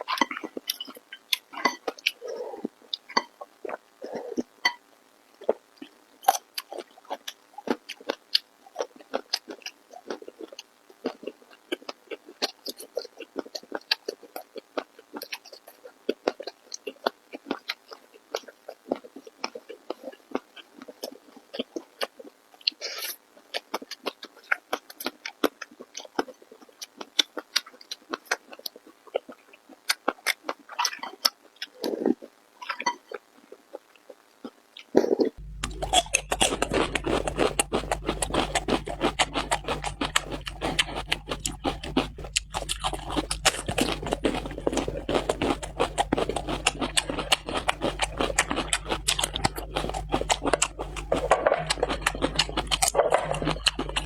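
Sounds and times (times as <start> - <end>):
wet chewing: 0.0 - 4.8, 5.4 - 54.0.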